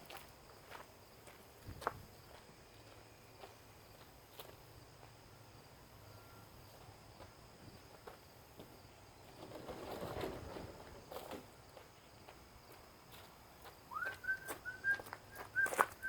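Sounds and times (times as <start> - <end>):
rustling and knocking: 9.2 - 11.5.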